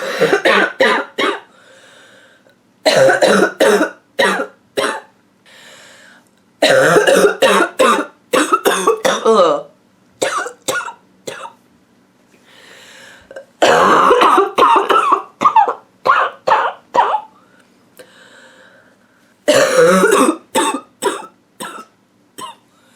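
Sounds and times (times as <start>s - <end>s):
woman barking cough: 0.0s - 1.5s, 2.9s - 5.1s, 6.6s - 11.6s, 13.6s - 17.3s, 19.5s - 22.6s.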